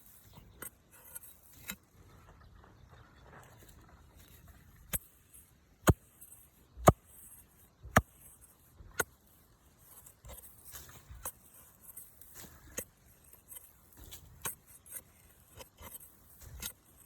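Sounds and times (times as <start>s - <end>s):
soft clicks and scrapes: 0.0s - 2.4s, 6.1s - 17.0s
digging tool striking ground: 4.9s - 17.0s.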